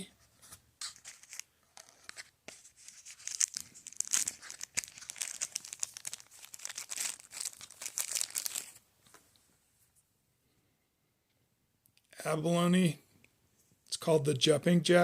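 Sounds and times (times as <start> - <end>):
packaging crinkling: 0.8 - 9.2.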